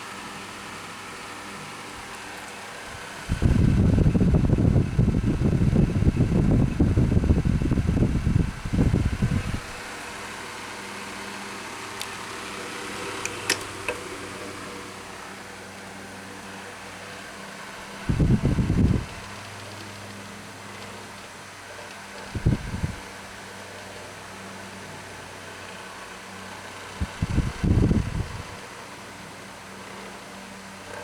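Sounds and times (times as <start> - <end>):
fan motor hum: 0.0 - 31.0
gusty breeze rumble on microphone: 2.9 - 10.0, 18.0 - 19.3, 22.3 - 23.2, 26.9 - 28.6.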